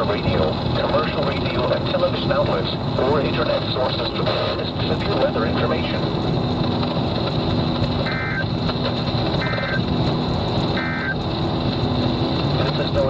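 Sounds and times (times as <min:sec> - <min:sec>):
radio hiss: 0:00.0 - 0:06.1, 0:08.0 - 0:09.9, 0:10.7 - 0:11.2, 0:12.6 - 0:13.0
low hum: 0:00.0 - 0:13.0
buzzing digital data tones: 0:08.0 - 0:08.7, 0:09.3 - 0:10.0, 0:10.7 - 0:11.3.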